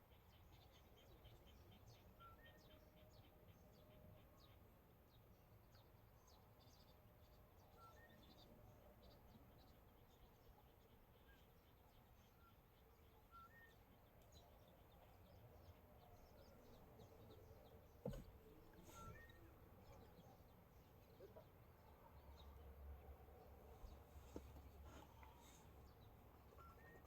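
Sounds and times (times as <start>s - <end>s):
bird chirps: 0.1s - 21.5s, 23.8s - 27.0s.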